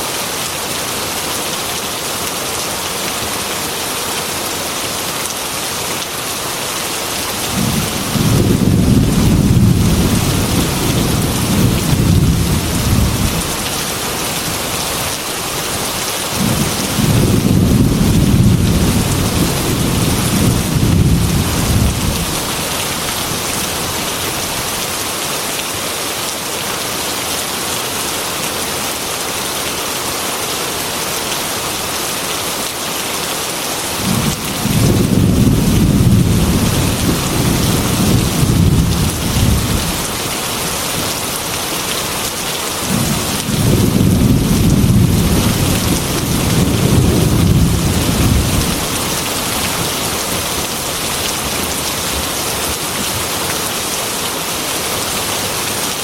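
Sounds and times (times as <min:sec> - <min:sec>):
heavy rain falling: 0:00.0 - 0:56.0
thunder rumbling: 0:07.5 - 0:13.7, 0:16.4 - 0:23.8, 0:34.0 - 0:40.1, 0:42.8 - 0:49.1.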